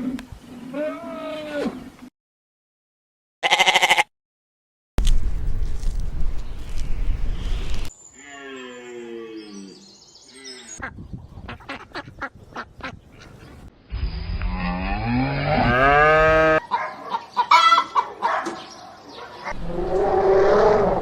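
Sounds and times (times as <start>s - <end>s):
animal call rising in pitch: 19.5s - 21.0s.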